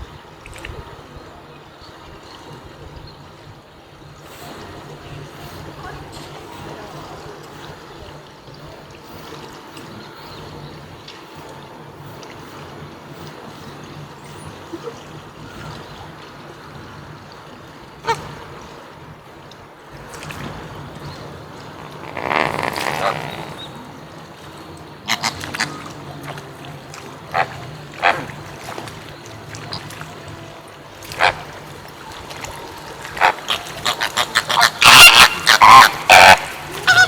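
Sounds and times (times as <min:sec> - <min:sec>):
flamingos honking: 0:18.0 - 0:18.9, 0:20.5 - 0:37.0.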